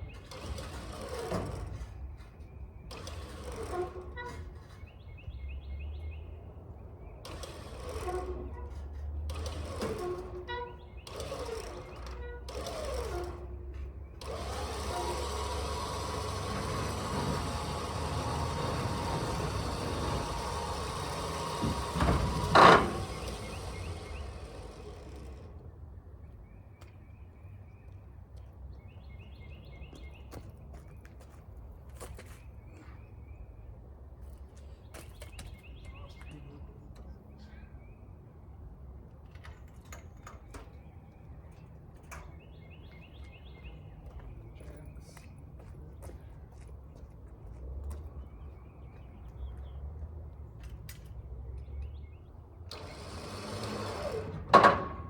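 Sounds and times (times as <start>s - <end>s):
engine humming: 7.3s - 26.2s
low outdoor rumble: 14.7s - 26.6s.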